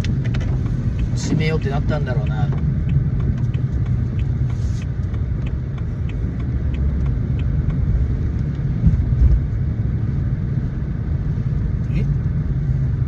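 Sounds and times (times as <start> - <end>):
faint light ticks: 0.0 - 9.0
car cabin road rumble: 0.0 - 13.0.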